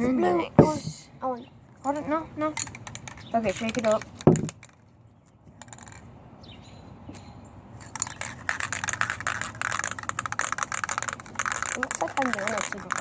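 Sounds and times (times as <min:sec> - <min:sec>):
spray can rattling: 0:02.6 - 0:04.9, 0:05.6 - 0:06.0, 0:07.8 - 0:13.0.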